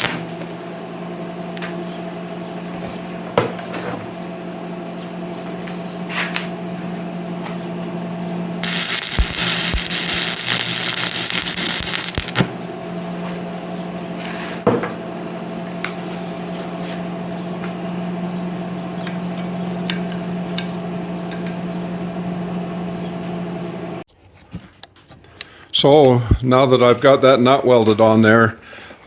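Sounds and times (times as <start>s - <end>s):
welding arc hiss: 0.0s - 6.6s, 8.6s - 14.4s
electrical hum: 0.0s - 24.1s.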